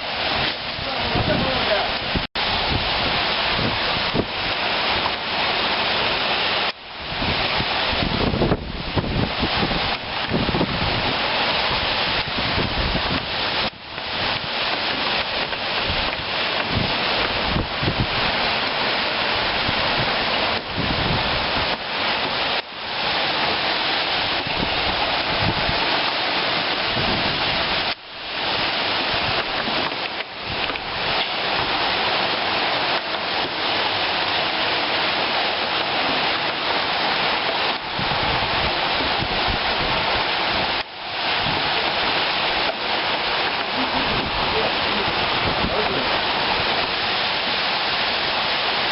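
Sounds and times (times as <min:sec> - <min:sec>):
torrential rain pouring: 0:00.0 - 0:48.9
wind buffeting microphone: 0:00.0 - 0:48.9.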